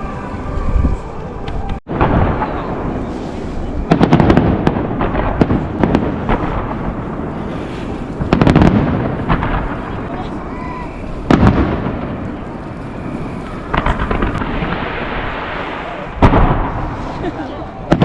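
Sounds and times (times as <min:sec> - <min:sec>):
firework crackles: 0:01.8 - 0:18.0
firework shells booming: 0:01.9 - 0:18.0.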